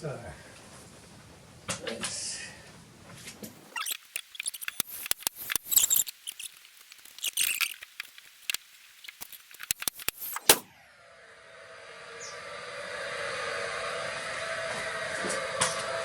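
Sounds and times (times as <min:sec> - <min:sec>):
nail gun clicks and rattles: 0:04.0 - 0:10.6.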